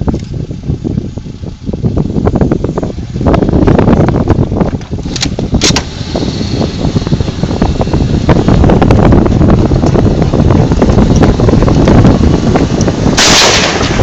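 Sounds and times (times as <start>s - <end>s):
wind buffeting microphone: 0.0s - 14.0s
sharp clicks: 4.8s - 5.9s.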